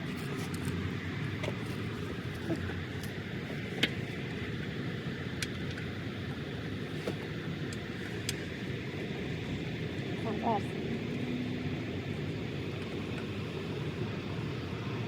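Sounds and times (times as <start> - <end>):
low outdoor rumble: 0.0 - 15.0.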